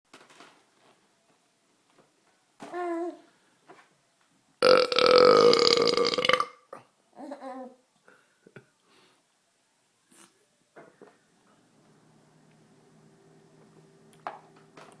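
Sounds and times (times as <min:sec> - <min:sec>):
man burping loudly: 0:04.6 - 0:06.6.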